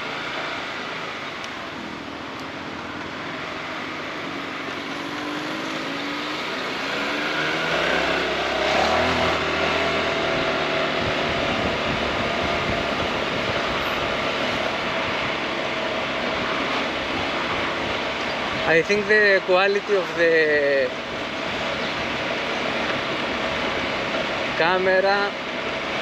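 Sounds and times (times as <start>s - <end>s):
scooter engine accelerating: 1.7s - 14.5s
wind buffeting microphone: 10.2s - 15.5s.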